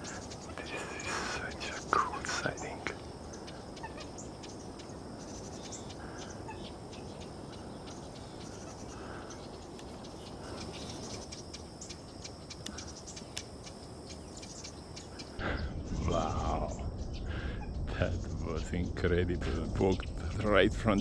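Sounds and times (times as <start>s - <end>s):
faint high ticking: 0.0s - 15.4s
steady low rumble: 0.0s - 21.0s.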